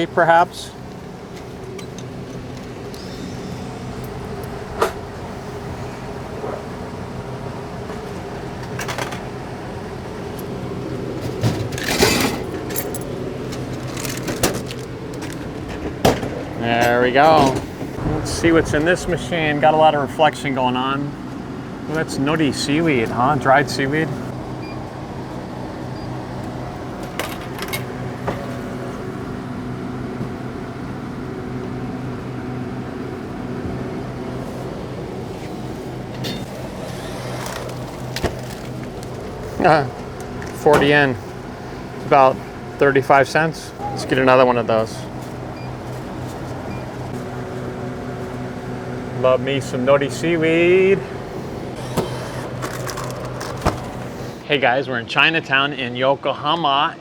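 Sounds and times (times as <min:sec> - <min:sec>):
steady low hum: 0:00.0 - 0:54.6
coins and vending machine clunks: 0:11.1 - 0:19.2, 0:26.9 - 0:28.6, 0:36.1 - 0:41.2, 0:43.7 - 0:45.8, 0:51.7 - 0:54.4.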